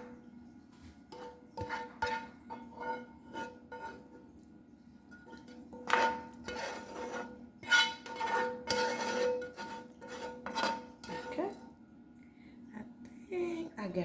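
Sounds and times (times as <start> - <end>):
faint steady hum: 0.0 - 14.0
metal utensil scraping a pan: 1.1 - 4.3, 5.1 - 11.7.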